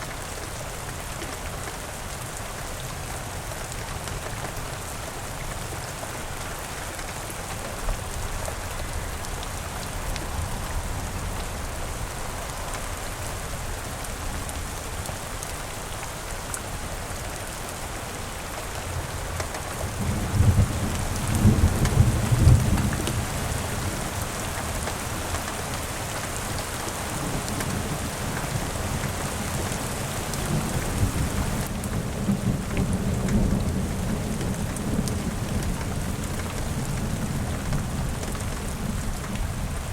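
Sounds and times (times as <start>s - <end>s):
steady rain falling: 0.0s - 39.9s
thunder rumbling: 19.8s - 24.4s.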